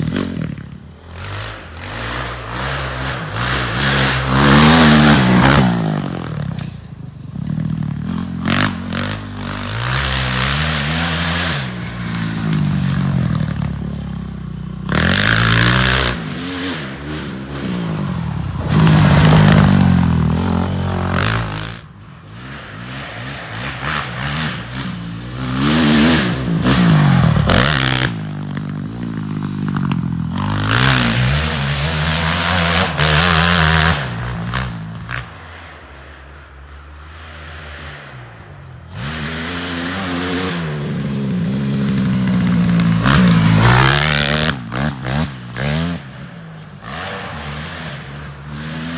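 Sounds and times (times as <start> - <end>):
dirt bike engine revving: 0.0 - 35.6, 36.7 - 48.9.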